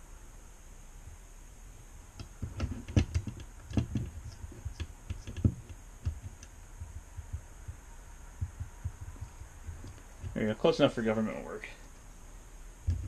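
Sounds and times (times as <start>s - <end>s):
tools clicking and knocking on workbench: 2.2s - 6.5s.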